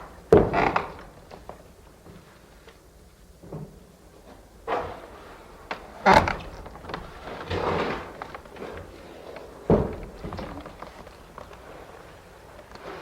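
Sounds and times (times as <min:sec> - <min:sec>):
wooden door creaking: 0:00.3 - 0:01.6, 0:04.7 - 0:13.0.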